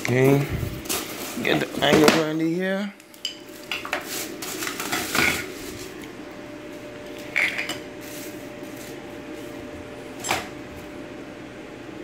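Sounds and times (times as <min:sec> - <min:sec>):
faint steady hum: 0:00.0 - 0:12.0
handling clatter of packaging: 0:03.5 - 0:06.0.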